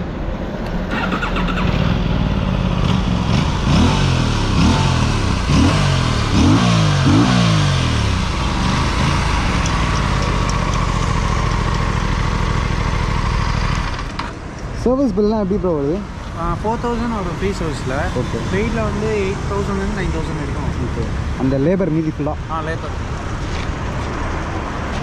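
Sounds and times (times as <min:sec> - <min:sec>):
motorcycle engine revving: 0:00.9 - 0:14.2.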